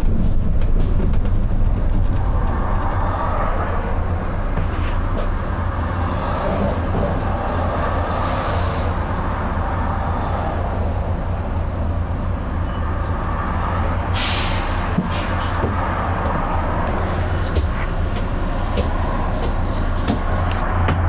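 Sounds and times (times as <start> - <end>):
bus diesel engine running: 0.0 - 21.0
compressed air hiss: 14.2 - 15.5.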